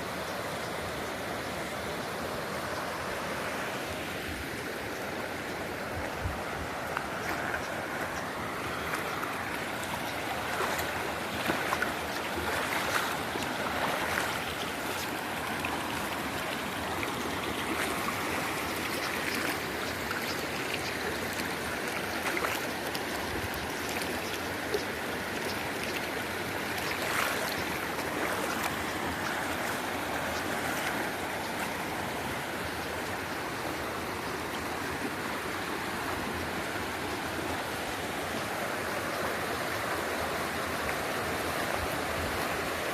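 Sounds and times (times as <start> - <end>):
stream of water flowing: 0.0 - 42.9
water splashes: 5.3 - 33.8.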